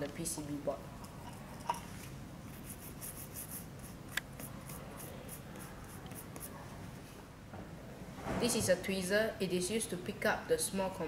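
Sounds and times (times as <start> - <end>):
rapid scratching strokes: 2.5 - 6.6.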